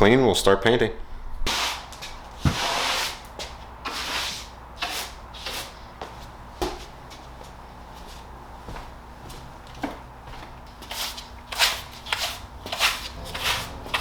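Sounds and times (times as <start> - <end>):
brushing and rubbing strokes: 10.8 - 14.0.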